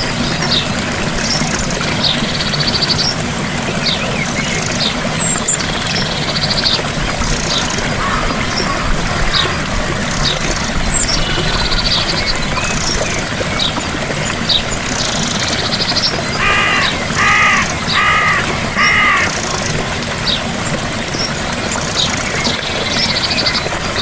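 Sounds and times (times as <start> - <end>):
waterfall rushing: 0.0 - 24.0
birds chirping and trilling: 3.8 - 20.5
bird calling: 16.2 - 19.8.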